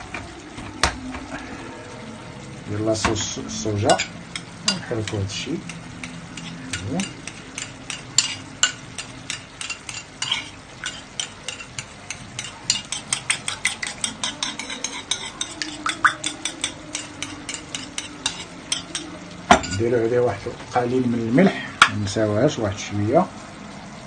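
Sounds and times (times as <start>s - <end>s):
spoon clinking and scraping container: 6.4s - 19.1s.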